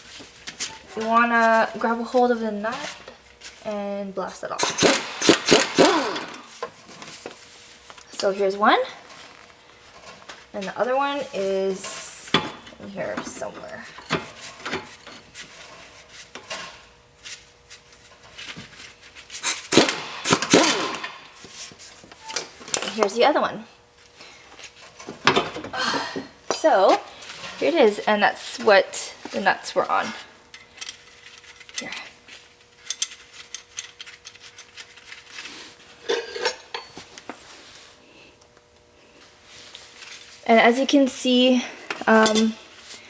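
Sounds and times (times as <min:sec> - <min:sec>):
metal car parts clinking: 0:36.0 - 0:36.9
metal tools knocking and clattering: 0:36.1 - 0:37.0.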